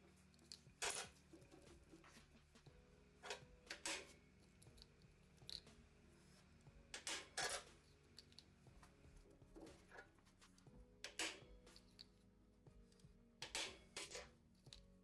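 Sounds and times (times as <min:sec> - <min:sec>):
metal parts and tools scraping: 0:00.4 - 0:02.2, 0:07.0 - 0:08.4.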